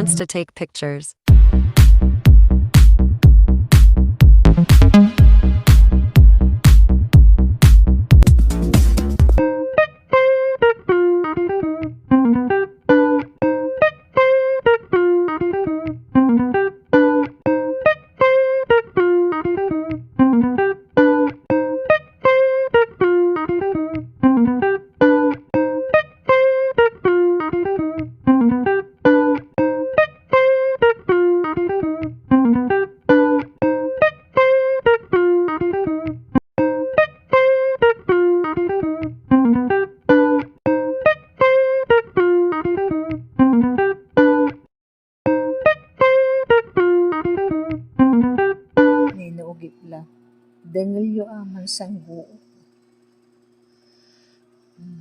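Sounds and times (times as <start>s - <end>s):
plucked guitar melody: 2.7s - 44.7s, 45.3s - 49.9s.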